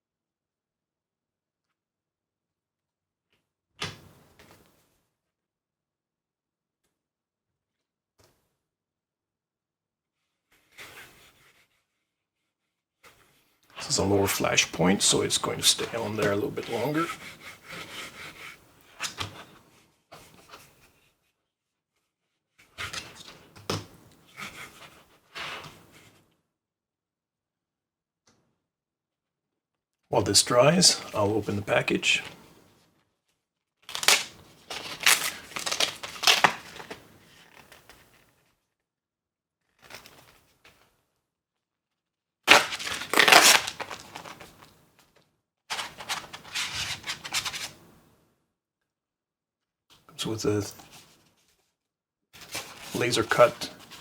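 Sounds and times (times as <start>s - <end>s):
plastic packaging crinkling: 33.9s - 37.7s, 42.5s - 44.7s, 45.7s - 47.7s
cleaning patch rubbing plastic: 42.5s - 44.4s.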